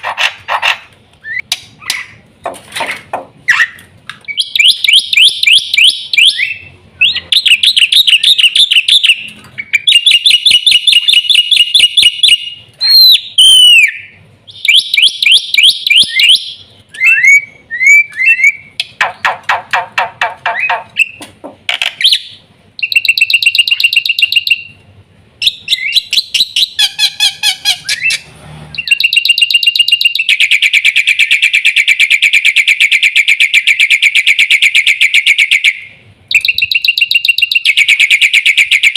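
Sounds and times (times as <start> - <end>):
bird singing loudly: 3.5 - 19.4, 25.4 - 38.9.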